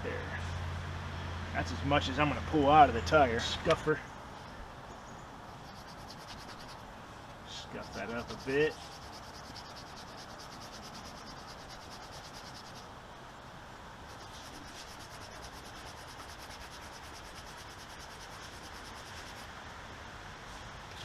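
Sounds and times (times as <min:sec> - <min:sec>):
scuff pad rubbing rubber tube: 0:05.6 - 0:06.8, 0:07.6 - 0:12.9, 0:14.1 - 0:19.4.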